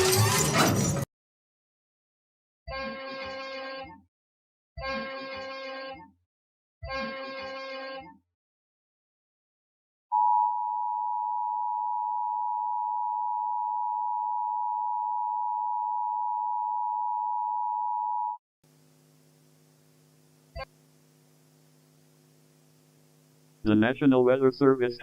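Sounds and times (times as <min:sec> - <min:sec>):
faint hum: 0:18.7 - 0:25.0.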